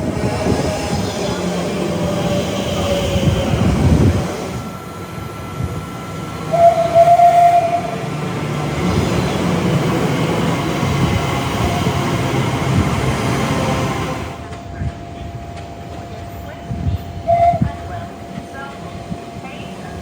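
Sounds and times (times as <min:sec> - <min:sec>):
train running on rails: 0:00.0 - 0:20.0
train horn blast: 0:06.5 - 0:08.1, 0:17.2 - 0:17.9.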